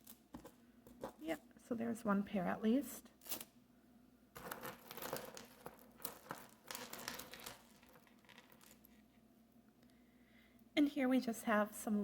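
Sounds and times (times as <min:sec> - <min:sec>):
jewelry rustling and clicking: 0:00.0 - 0:01.4, 0:04.3 - 0:09.2.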